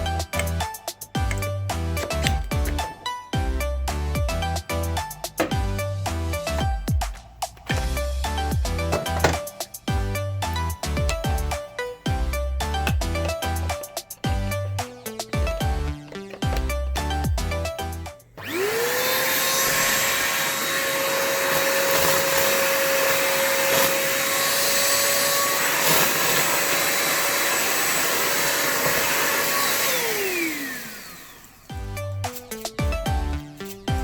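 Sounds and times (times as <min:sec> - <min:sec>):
music: 0:00.0 - 0:34.0
vacuum cleaner motor whine: 0:06.3 - 0:32.4.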